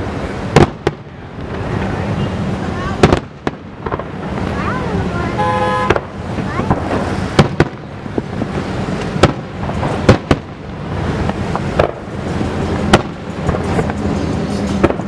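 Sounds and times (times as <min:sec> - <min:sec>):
fireworks bangs: 0:00.0 - 0:15.0.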